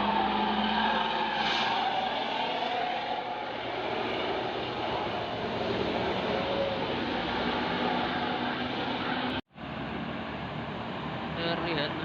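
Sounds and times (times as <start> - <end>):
bus diesel engine under load: 0.0 - 12.0.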